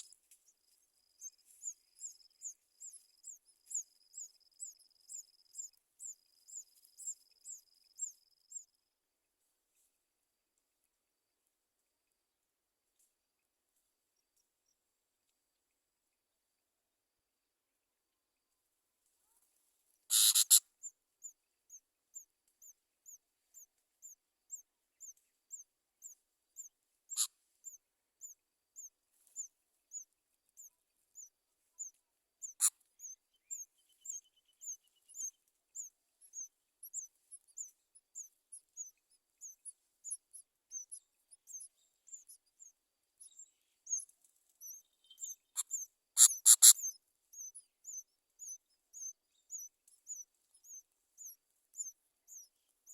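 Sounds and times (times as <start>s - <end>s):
loud bursts of bird calling: 20.1s - 20.6s, 46.2s - 46.9s
nestling birds cheeping: 20.1s - 20.6s, 32.4s - 52.9s.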